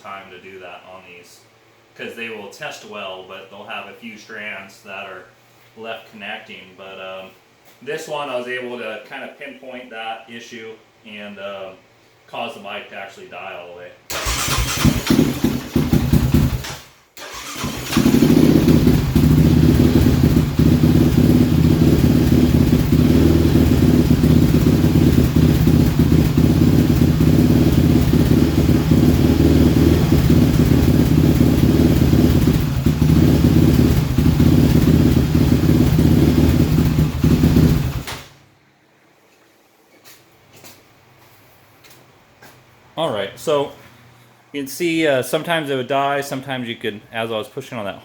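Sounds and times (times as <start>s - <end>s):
engine stalling and idling unevenly: 14.1s - 38.4s.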